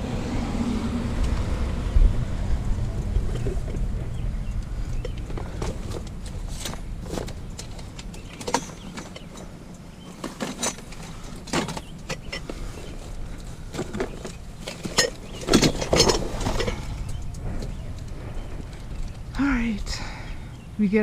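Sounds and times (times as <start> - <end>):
low background rumble: 0.0 - 21.0
items clunking and clattering: 2.9 - 19.4.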